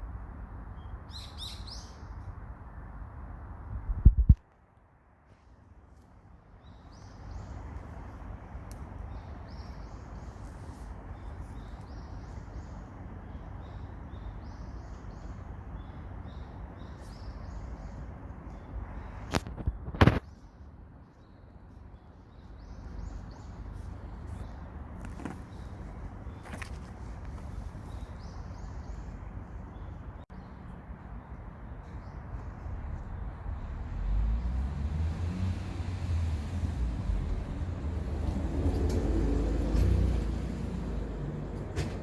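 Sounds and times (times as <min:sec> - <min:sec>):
low wind rumble: 0:00.0 - 0:04.5, 0:22.6 - 0:42.0
small birds chirping: 0:00.8 - 0:02.3, 0:06.6 - 0:33.4.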